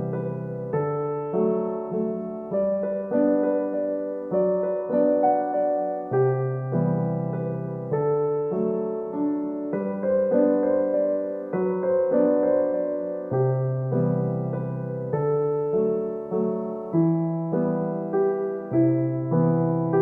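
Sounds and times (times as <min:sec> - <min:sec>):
gentle electric piano: 0:00.0 - 0:20.0.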